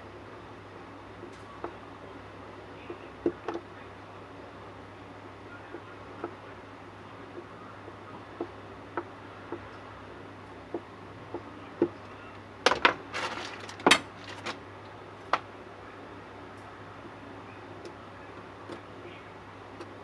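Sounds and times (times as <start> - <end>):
steady low hum: 0.0 - 20.0.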